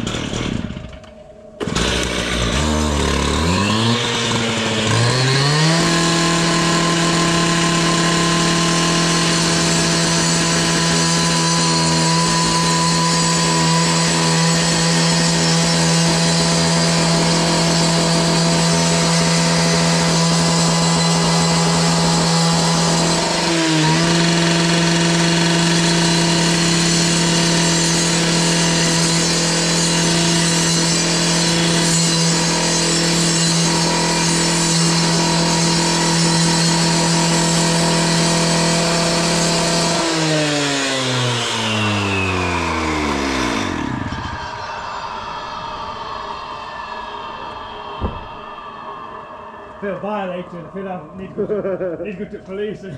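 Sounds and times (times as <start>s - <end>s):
power tool running: 0.0s - 51.9s.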